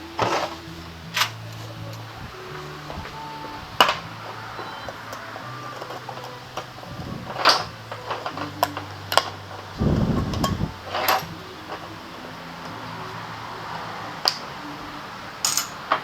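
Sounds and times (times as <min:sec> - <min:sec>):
low hum: 0:00.0 - 0:15.5
metal tools clicking and knocking: 0:04.6 - 0:09.4, 0:15.4 - 0:16.0.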